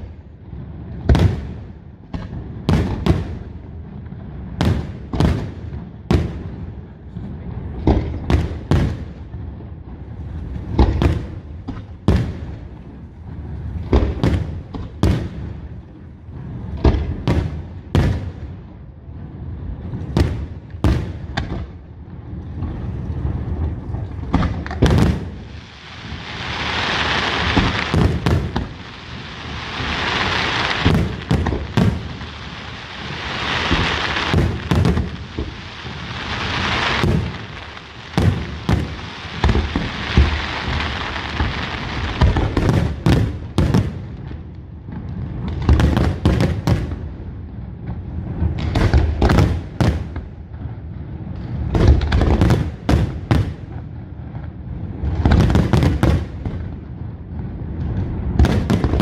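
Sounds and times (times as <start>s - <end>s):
fireworks bangs: 0.0s - 9.4s, 10.0s - 59.0s
dense hiss: 25.3s - 42.4s.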